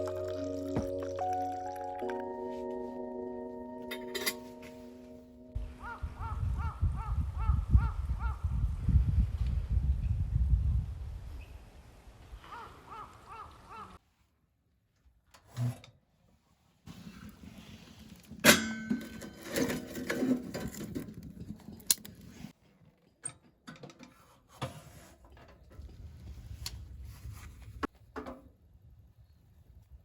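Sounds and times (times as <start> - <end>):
metal clank with ringing: 18.5 - 19.8.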